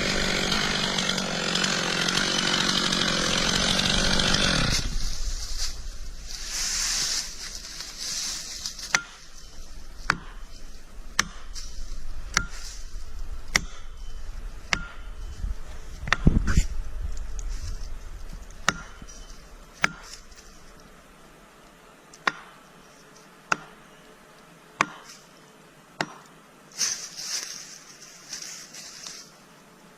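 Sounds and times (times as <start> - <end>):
chainsaw: 0.0 - 9.4, 10.0 - 16.7, 17.3 - 20.5
chopping blows on wood: 24.8 - 25.1.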